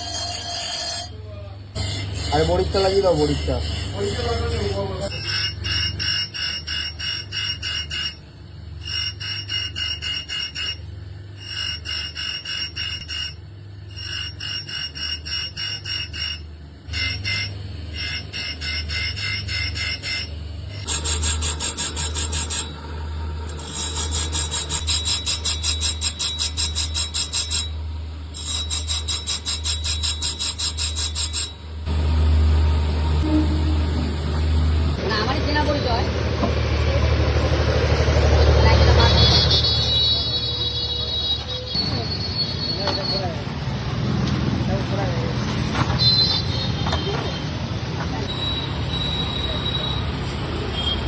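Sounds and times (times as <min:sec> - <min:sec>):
shell being filed by hand: 0:01.8 - 0:08.2, 0:23.5 - 0:27.7, 0:28.4 - 0:31.5.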